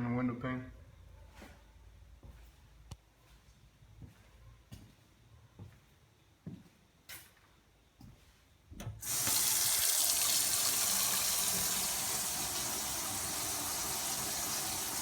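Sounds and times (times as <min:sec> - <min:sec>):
faucet turned on: 0:09.0 - 0:15.0
water running into sink: 0:09.0 - 0:15.0.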